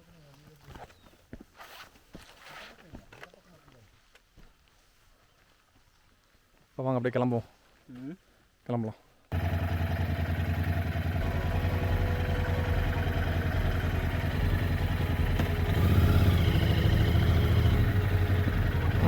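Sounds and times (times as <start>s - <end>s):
motorcycle engine idling: 9.3s - 19.0s.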